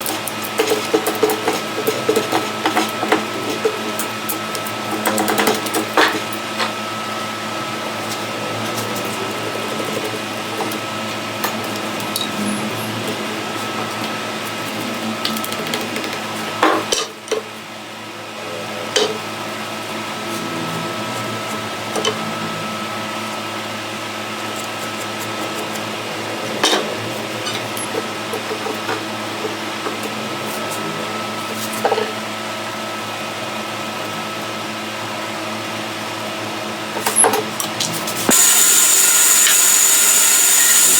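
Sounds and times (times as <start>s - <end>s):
small machine humming: 17.7s - 40.9s.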